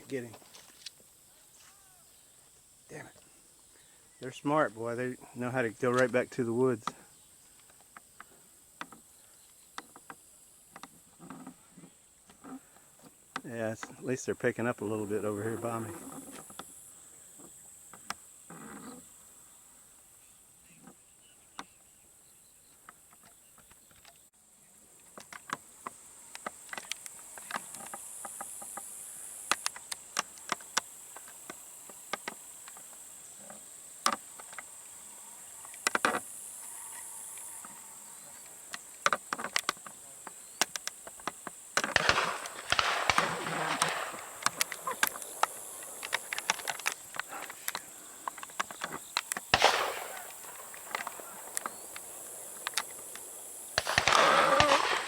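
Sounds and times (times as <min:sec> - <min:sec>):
rustling noises: 0:00.0 - 0:03.4, 0:24.9 - 0:55.0
high insect buzz: 0:00.0 - 0:55.0.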